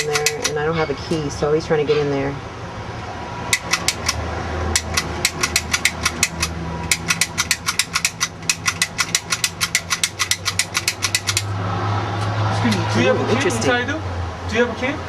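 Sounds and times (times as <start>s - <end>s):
lock picking metal clicks: 0.0s - 0.6s, 3.5s - 11.5s.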